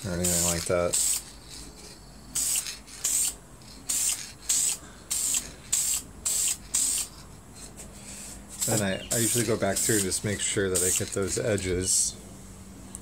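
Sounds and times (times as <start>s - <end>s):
lacquer spraying in hissing spurts: 2.3s - 7.1s, 8.0s - 11.7s.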